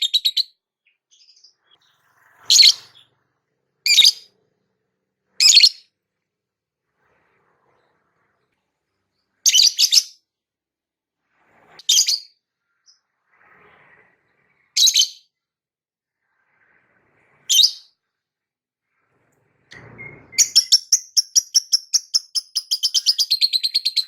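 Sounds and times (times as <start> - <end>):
lovebird chirping: 0.0 - 3.1, 3.9 - 4.3, 5.4 - 5.8, 9.5 - 10.2, 14.8 - 15.2, 19.8 - 24.0.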